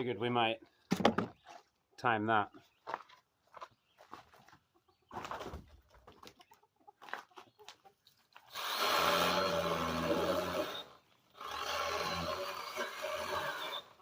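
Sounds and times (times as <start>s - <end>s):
mini chainsaw running: 8.5s - 14.0s.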